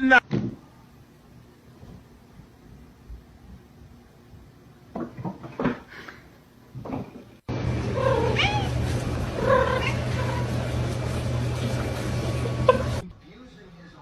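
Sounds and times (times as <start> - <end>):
cat meowing: 8.0 - 8.8.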